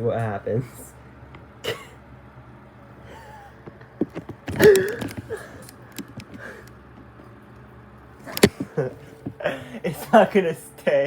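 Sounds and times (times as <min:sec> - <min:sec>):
low room hum: 0:00.0 - 0:11.0
hands clicking and rustling: 0:04.1 - 0:06.8, 0:08.3 - 0:08.8.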